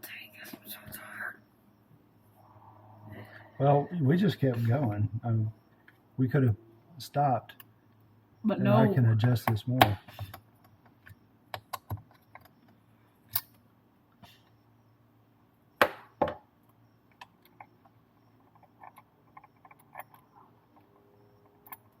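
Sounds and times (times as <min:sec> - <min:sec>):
tools and parts clicking and knocking: 0:09.4 - 0:13.6, 0:16.1 - 0:22.0.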